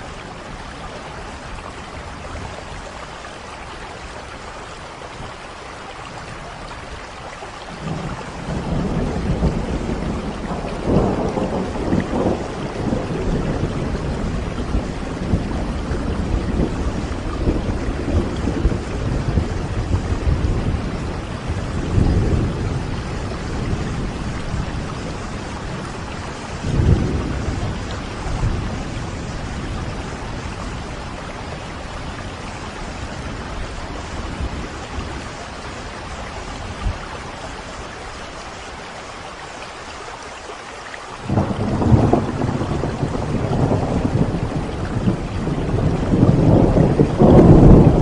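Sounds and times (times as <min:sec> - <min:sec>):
heavy rain: 0:00.0 - 0:48.0
thunder rumbling: 0:07.7 - 0:37.9, 0:41.2 - 0:48.0.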